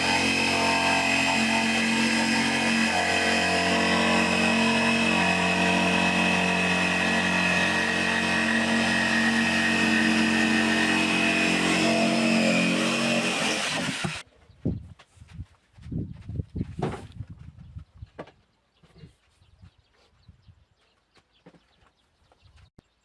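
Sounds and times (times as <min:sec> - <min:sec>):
motor-driven machine running: 0:00.0 - 0:14.2.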